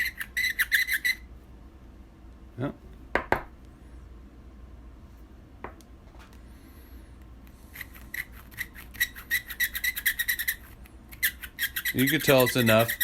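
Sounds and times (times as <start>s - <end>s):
deburring tool scraping brass: 11.9s - 13.0s.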